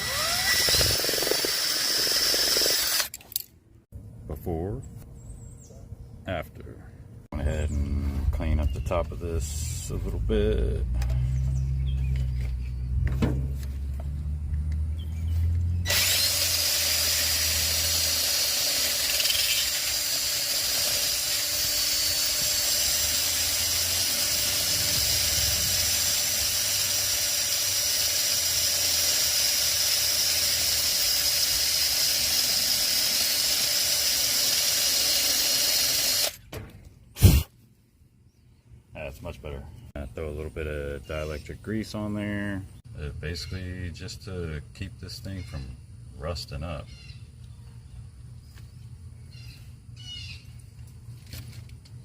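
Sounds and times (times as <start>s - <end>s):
low motor hum: 9.6s - 16.6s.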